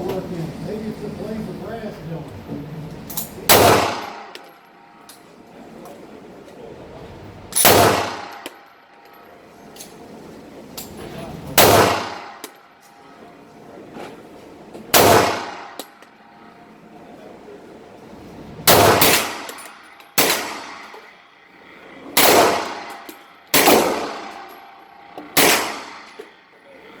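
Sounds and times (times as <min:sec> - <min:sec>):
gunshots: 0:03.5 - 0:04.3, 0:07.6 - 0:08.5, 0:11.6 - 0:12.4, 0:14.9 - 0:15.8, 0:18.7 - 0:19.6, 0:20.2 - 0:21.0, 0:22.2 - 0:24.6, 0:25.4 - 0:26.2.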